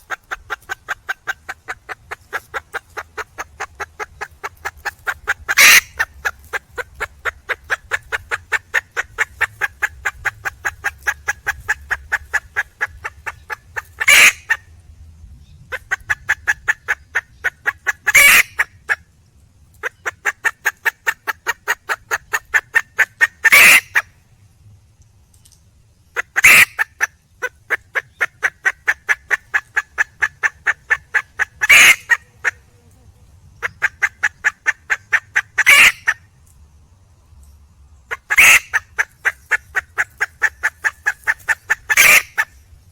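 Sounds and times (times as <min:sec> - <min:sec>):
harsh hen call: 0:00.0 - 0:14.6, 0:16.6 - 0:18.6, 0:22.2 - 0:24.0, 0:26.2 - 0:26.8, 0:27.7 - 0:32.6, 0:33.7 - 0:36.2, 0:38.1 - 0:42.5
junglefowl hen clucking: 0:00.0 - 0:14.8, 0:15.7 - 0:19.1, 0:19.8 - 0:24.2, 0:26.1 - 0:36.4, 0:38.0 - 0:42.9.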